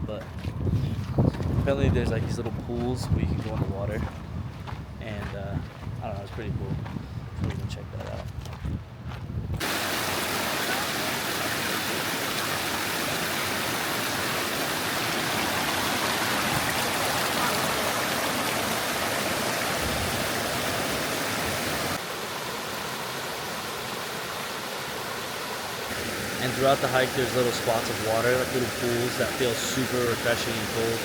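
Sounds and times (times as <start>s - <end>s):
creek flowing: 9.6s - 31.0s.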